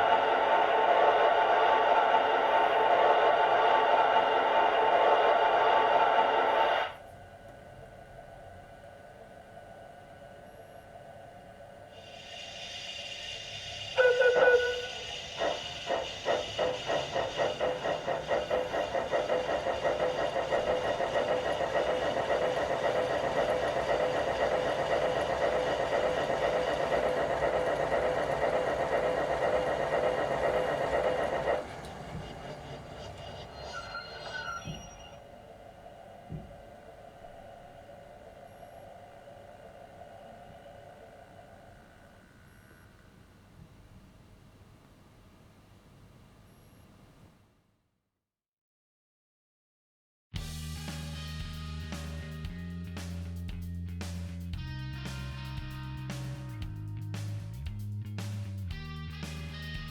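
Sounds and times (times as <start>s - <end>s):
steam locomotive exhaust chuffs: 0.0s - 47.3s, 50.4s - 59.9s
steam hiss: 11.7s - 41.4s
steam whistle toot: 12.0s - 36.6s.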